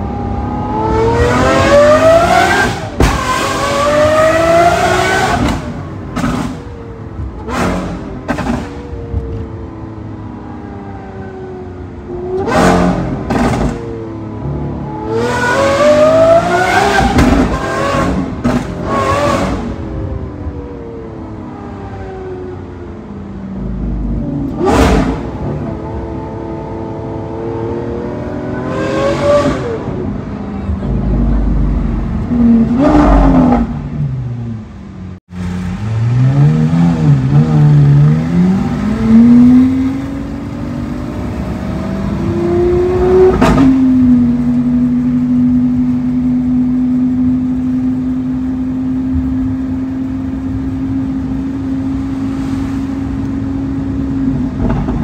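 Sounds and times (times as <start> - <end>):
sports car engine revving: 0.0 - 6.6, 12.1 - 19.9, 23.6 - 34.7.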